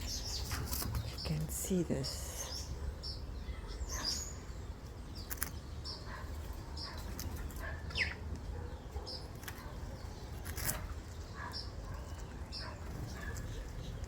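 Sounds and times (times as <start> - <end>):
small bird chirping: 0.0 - 14.0
sharp clicks: 5.2 - 5.6.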